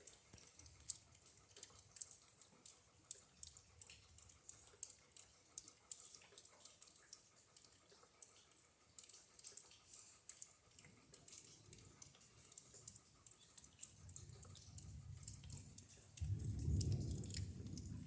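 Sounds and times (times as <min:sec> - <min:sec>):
faint rain dripping: 0:00.0 - 0:18.0.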